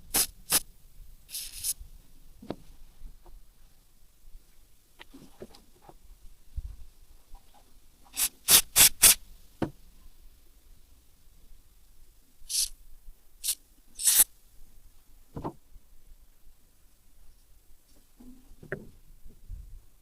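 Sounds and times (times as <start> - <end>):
hissing spray bursts: 0.0 - 0.6, 1.3 - 1.8, 8.1 - 9.2, 12.5 - 12.7, 13.4 - 14.3.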